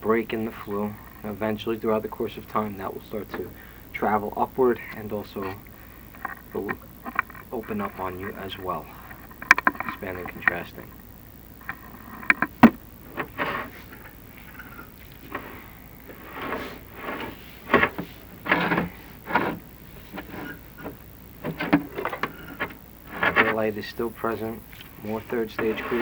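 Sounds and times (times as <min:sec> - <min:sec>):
camera scraping against flue tiles: 0:11.6 - 0:23.7.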